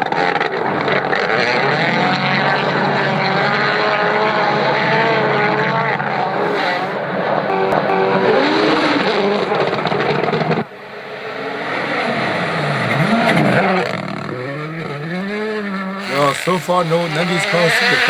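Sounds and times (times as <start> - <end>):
rally car engine revving: 0.0 - 10.6.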